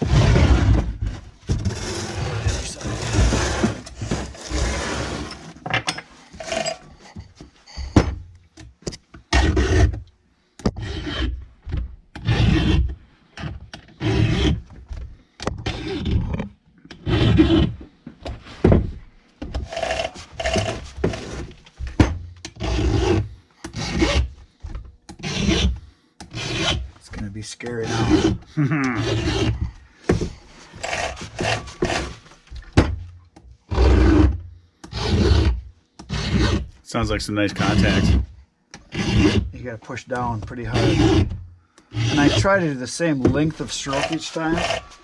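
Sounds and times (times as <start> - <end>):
file rasping on chainsaw chain: 10.8 - 11.4, 12.2 - 12.9, 13.9 - 14.6, 17.0 - 17.8, 19.6 - 21.4, 22.6 - 24.3, 25.2 - 26.9, 27.6 - 29.6, 30.7 - 32.2, 34.9 - 36.7, 37.6 - 39.6, 40.2 - 43.0, 43.6 - 45.0.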